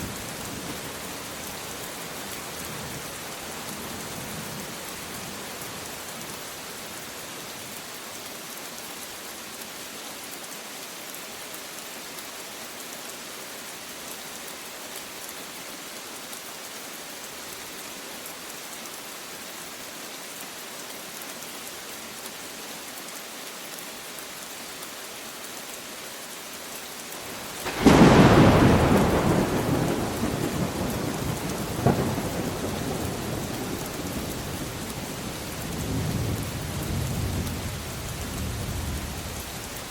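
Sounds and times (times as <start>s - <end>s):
steady rain falling: 0.0s - 39.9s
thunderclap rumbling: 27.6s - 39.4s.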